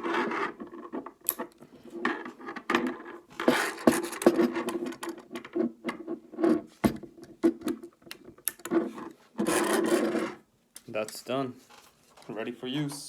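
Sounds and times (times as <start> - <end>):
rubbing and scraping: 0.0 - 7.7, 8.6 - 10.5.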